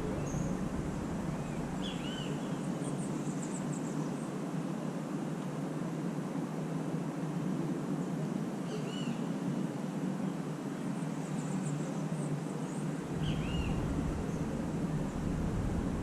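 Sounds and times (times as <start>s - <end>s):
faint high twittering: 0.0s - 4.0s, 12.7s - 16.0s
distant city traffic rumble: 0.0s - 5.4s, 12.5s - 16.0s.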